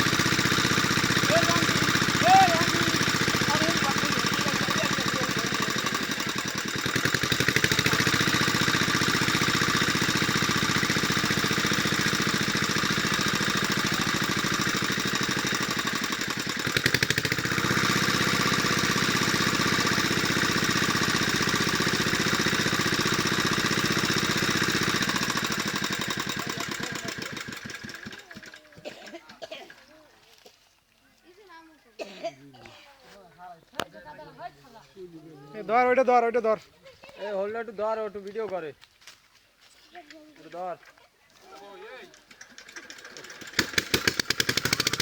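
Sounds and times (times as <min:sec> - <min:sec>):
engine running with knocking beat: 0:00.0 - 0:28.8, 0:42.3 - 0:45.0.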